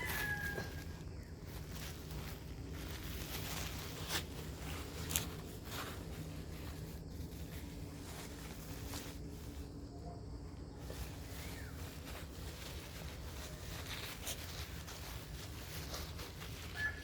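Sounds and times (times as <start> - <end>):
light rustling and handling: 0.0 - 17.0
low background hum: 0.0 - 17.0.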